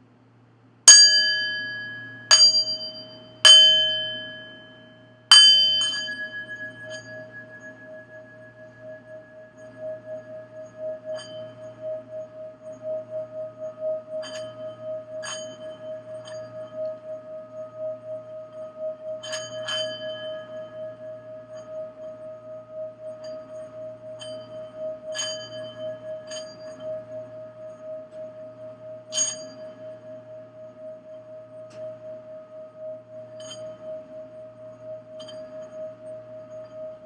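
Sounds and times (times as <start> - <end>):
bright metallic strikes: 0.9 - 7.6
singing bowl ringing tone: 0.9 - 37.0.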